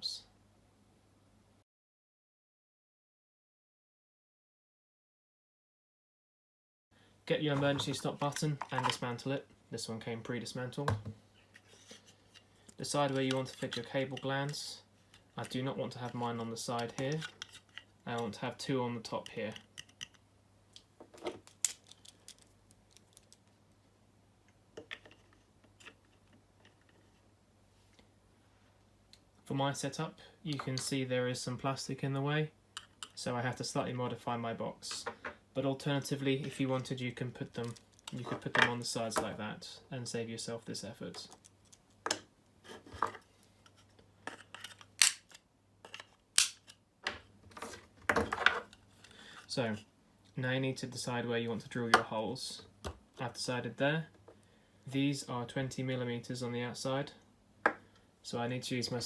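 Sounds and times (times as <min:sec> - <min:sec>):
plastic parts clicking and knocking: 0:19.5 - 0:20.2, 0:20.8 - 0:23.5, 0:37.6 - 0:39.3.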